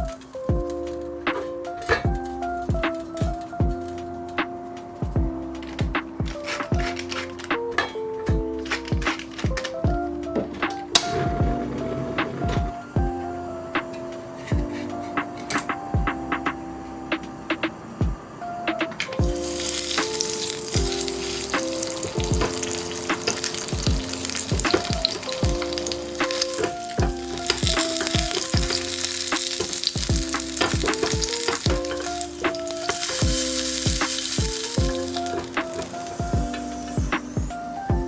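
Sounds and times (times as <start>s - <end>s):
music with plucked notes: 0.0s - 38.0s
food sizzling in oil: 19.3s - 37.4s.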